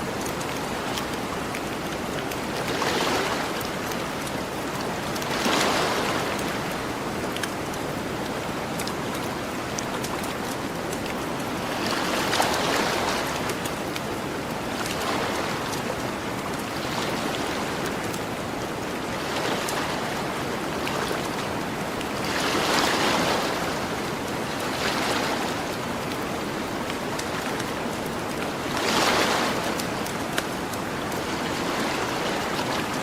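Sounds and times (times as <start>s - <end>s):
ocean waves on beach: 0.0s - 33.0s
faint campfire crackles: 6.1s - 19.7s.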